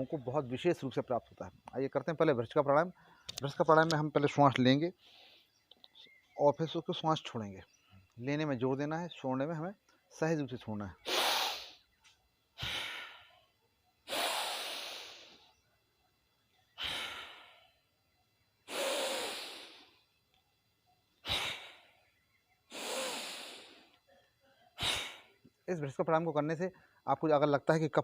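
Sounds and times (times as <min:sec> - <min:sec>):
man breathing deeply through nose: 0:05.0 - 0:05.6, 0:11.1 - 0:11.9, 0:12.6 - 0:13.4, 0:14.1 - 0:15.5, 0:16.8 - 0:17.9, 0:18.6 - 0:20.1, 0:21.2 - 0:22.1, 0:22.7 - 0:24.0, 0:24.8 - 0:25.4.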